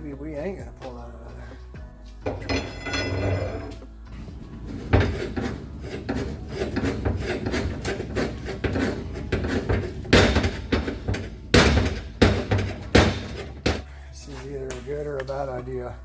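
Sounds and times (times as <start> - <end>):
metal clanking and scraping: 2.2 - 13.9.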